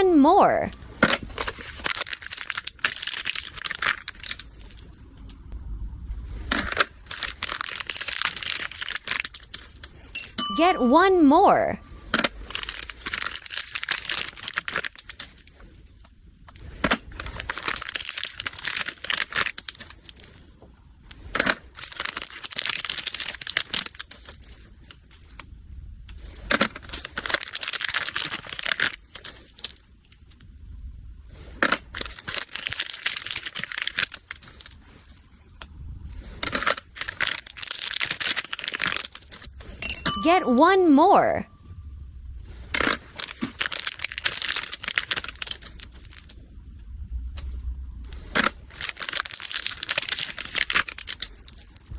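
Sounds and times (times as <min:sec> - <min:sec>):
plastic bags crinkling: 0:01.3 - 0:04.8, 0:07.1 - 0:09.7, 0:27.2 - 0:29.3, 0:37.0 - 0:39.4, 0:43.2 - 0:46.3, 0:48.8 - 0:51.2.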